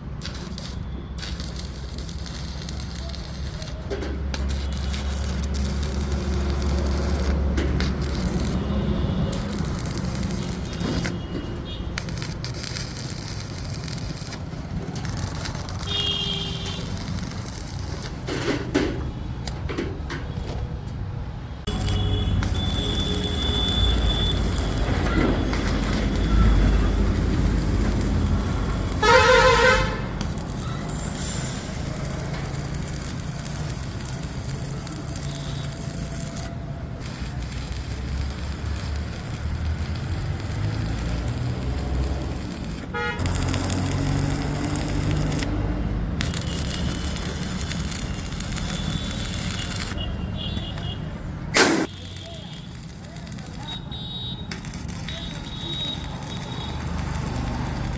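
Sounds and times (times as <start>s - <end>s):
road traffic rumble: 0.0s - 57.9s
vehicle horn: 15.8s - 17.0s, 21.7s - 27.1s, 28.2s - 30.2s, 42.9s - 43.9s, 48.6s - 51.1s, 53.6s - 54.5s.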